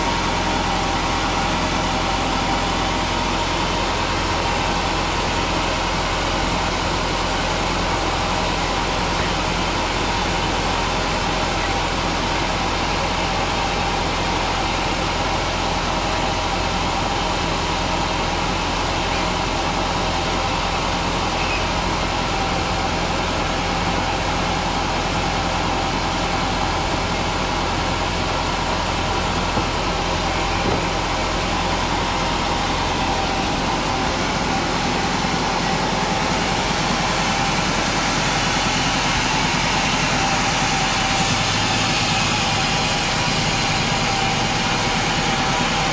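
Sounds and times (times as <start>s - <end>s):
sawmill saw droning: 0.0s - 45.9s.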